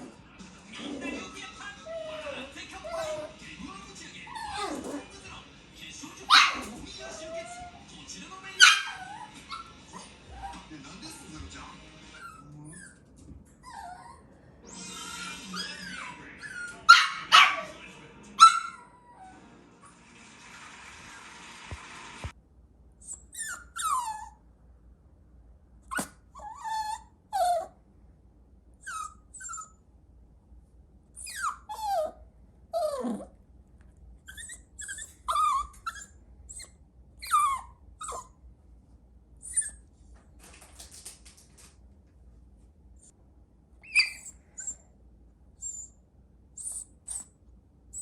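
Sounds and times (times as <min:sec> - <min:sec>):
puppy yipping and whining: 0:01.8 - 0:03.4, 0:04.3 - 0:05.0, 0:06.3 - 0:07.8, 0:08.6 - 0:10.7, 0:12.1 - 0:17.8, 0:18.4 - 0:19.4, 0:23.0 - 0:24.4, 0:25.9 - 0:27.8, 0:28.8 - 0:29.8, 0:31.2 - 0:33.3, 0:34.2 - 0:38.4, 0:39.4 - 0:39.9, 0:43.8 - 0:44.8, 0:45.6 - 0:48.0.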